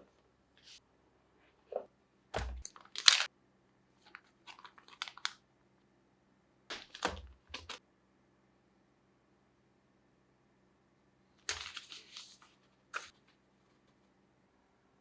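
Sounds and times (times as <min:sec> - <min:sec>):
packaging crinkling and tearing: 0:02.6 - 0:03.3, 0:04.1 - 0:05.4.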